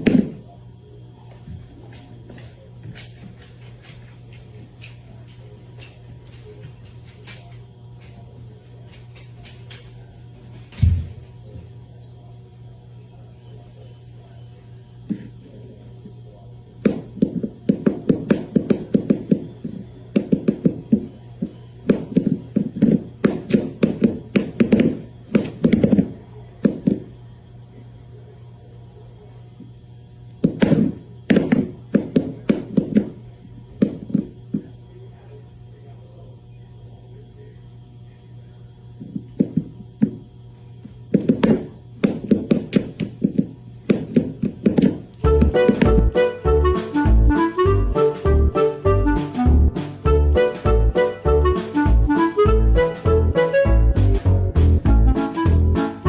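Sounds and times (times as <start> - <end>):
steady low hum: 0.0 - 56.0
music: 45.2 - 56.0.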